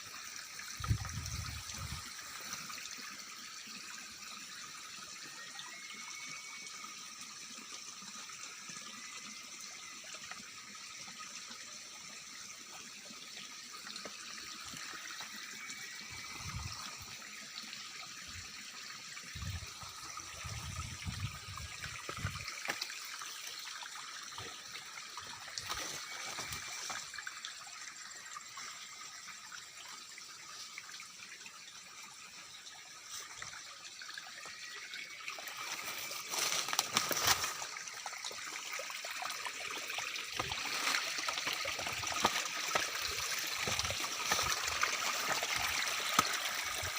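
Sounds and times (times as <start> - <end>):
insects buzzing and trilling: 0.0 - 46.9.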